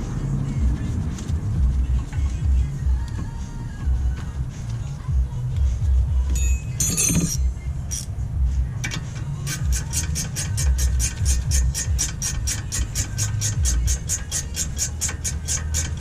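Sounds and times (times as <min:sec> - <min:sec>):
steady low rumble: 0:00.0 - 0:14.3
ratchet wrench clicking: 0:06.3 - 0:08.1, 0:08.8 - 0:16.0
metallic clatter: 0:06.4 - 0:16.0.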